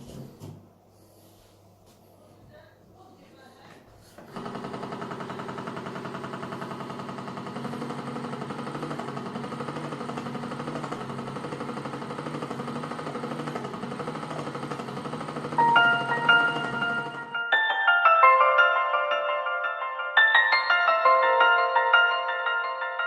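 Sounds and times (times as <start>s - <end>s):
small electric motor pulsing: 4.3s - 17.3s.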